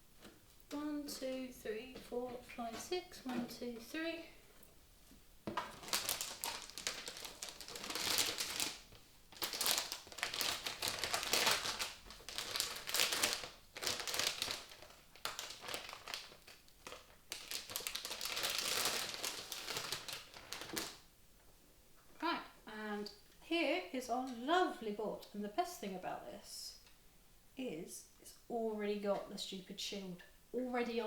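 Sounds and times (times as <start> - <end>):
packaging crinkling and rustling: 5.5 - 21.1.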